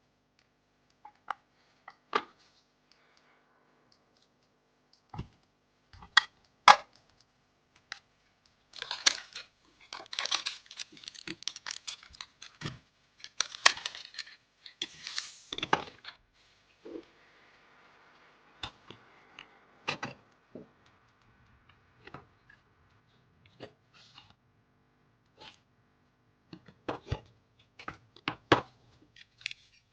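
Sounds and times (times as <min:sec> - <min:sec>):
packaging rustling and tearing: 0:08.8 - 0:16.1.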